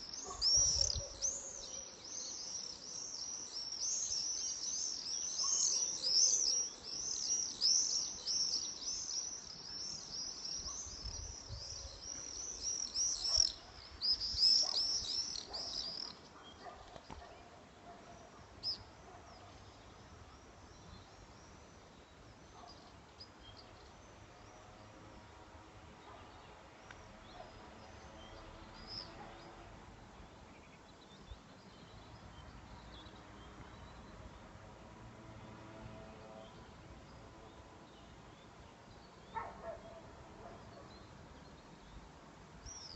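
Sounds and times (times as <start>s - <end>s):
small birds chirping: 0.0s - 24.1s.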